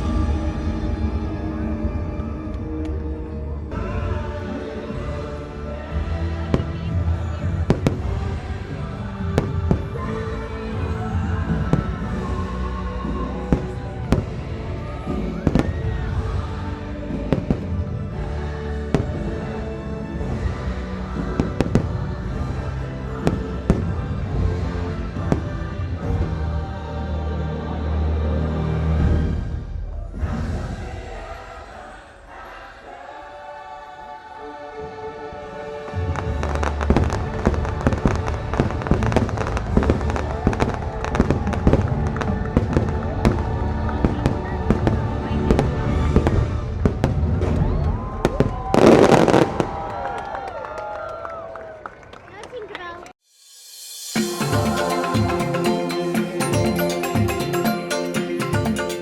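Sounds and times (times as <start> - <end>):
loud show music: 0.0 - 31.6, 35.4 - 47.4, 53.8 - 59.0
fireworks bangs: 36.0 - 50.1.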